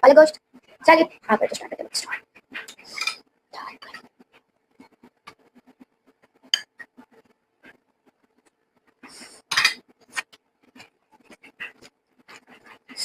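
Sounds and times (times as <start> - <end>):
cutlery clatter: 2.7 - 3.2, 9.5 - 10.3
cutlery clinking on a plate: 9.5 - 10.3.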